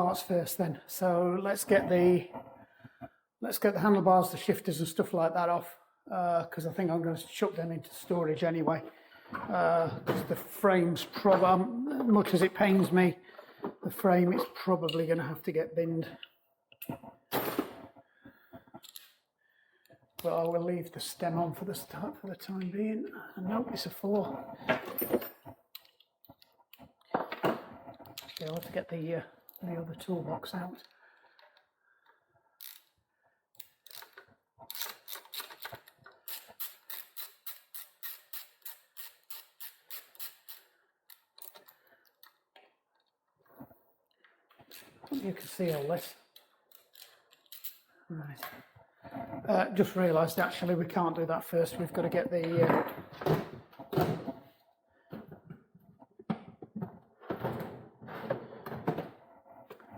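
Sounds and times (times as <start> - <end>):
knocks and clunks of handled objects: 8.8 - 15.0, 23.5 - 32.9, 38.4 - 49.9, 51.6 - 59.9
ratchet clicking: 33.6 - 41.6, 46.7 - 47.9.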